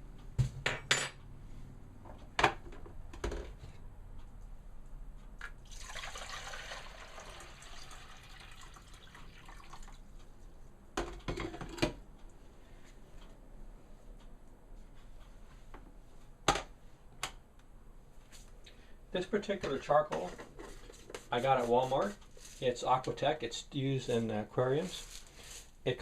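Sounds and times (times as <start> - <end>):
water being poured: 5.6 - 10.0.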